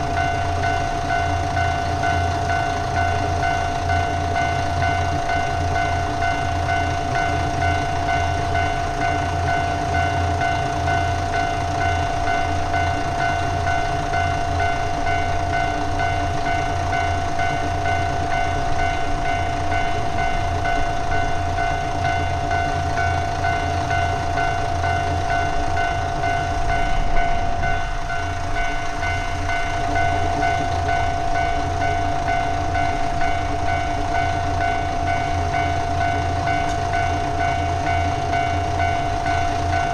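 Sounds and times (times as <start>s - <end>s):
diesel train running: 0.0s - 39.9s
level crossing alarm ringing: 0.0s - 39.9s.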